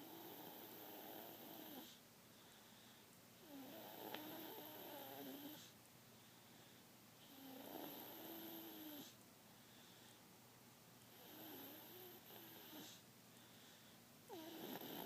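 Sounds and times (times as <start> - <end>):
faint snoring: 0.0 - 2.0, 3.4 - 5.8, 7.2 - 9.2, 11.1 - 13.0, 14.3 - 15.0.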